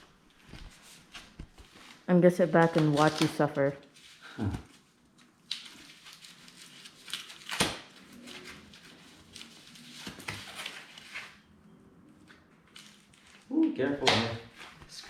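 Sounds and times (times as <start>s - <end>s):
rustling and handling noises: 0.0s - 11.6s.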